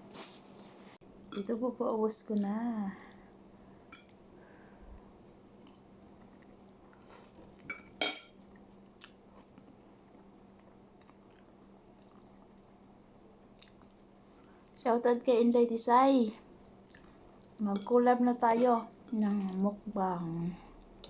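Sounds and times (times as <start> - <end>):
faint steady hum: 0.0 - 21.0
chewing and biting food: 10.6 - 12.5, 16.8 - 17.6.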